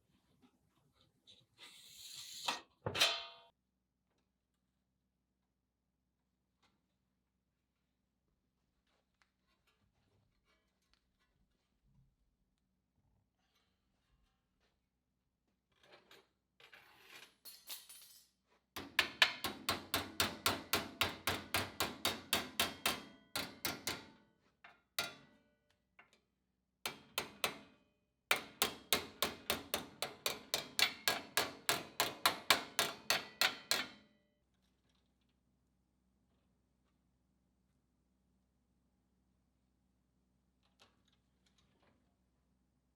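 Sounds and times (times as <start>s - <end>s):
hammer striking sheet steel: 18.8s - 24.1s, 28.3s - 34.0s.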